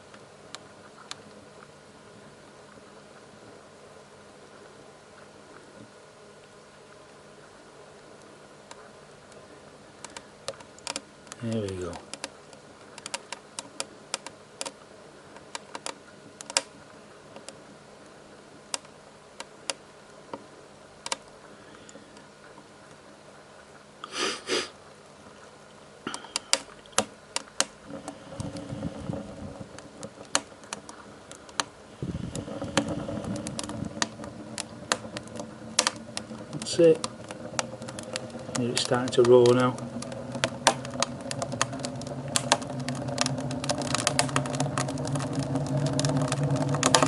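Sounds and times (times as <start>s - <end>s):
kindling crackling and popping: 8.1s - 23.0s, 26.0s - 47.0s
stove burner rushing rumble: 27.6s - 47.0s.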